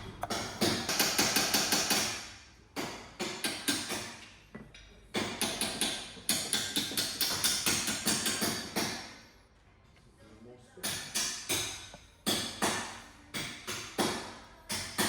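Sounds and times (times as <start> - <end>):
hammer tapping: 2.8 - 9.1, 10.8 - 15.0.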